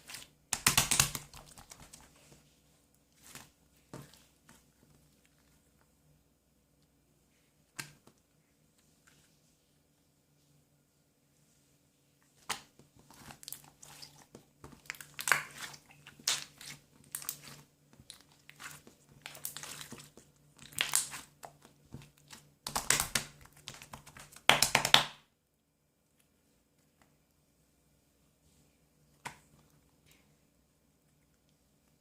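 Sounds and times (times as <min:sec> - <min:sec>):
slime squelching by hand: 0:00.0 - 0:06.0, 0:12.3 - 0:25.0.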